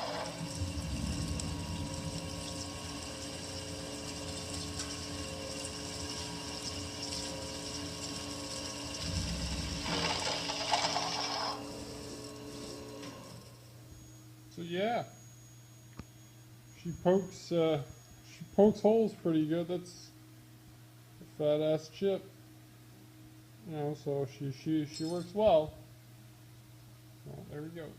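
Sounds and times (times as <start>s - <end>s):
motor hum: 0.0s - 19.1s
drill grinding into steel: 9.8s - 12.8s.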